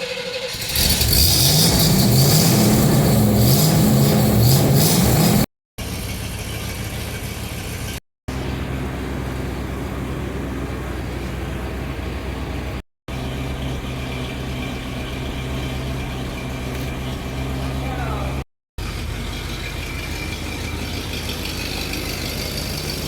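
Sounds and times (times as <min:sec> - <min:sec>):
car engine revving and idling: 0:00.5 - 0:23.0.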